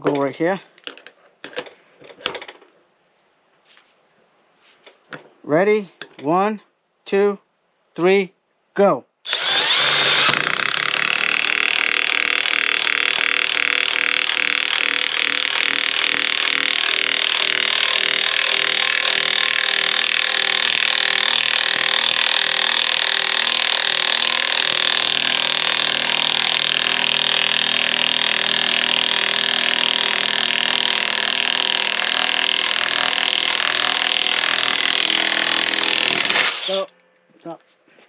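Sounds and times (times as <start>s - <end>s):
impact wrench hammering: 9.5s - 36.8s.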